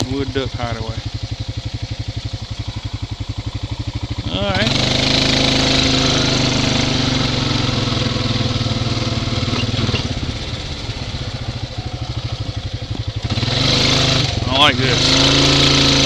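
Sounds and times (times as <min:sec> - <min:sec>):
off-road vehicle engine running: 0:00.0 - 0:16.0.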